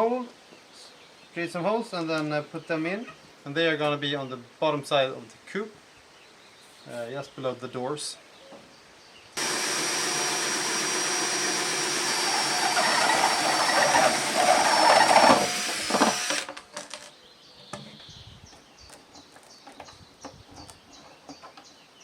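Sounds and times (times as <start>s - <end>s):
power drill boring: 9.4s - 16.7s.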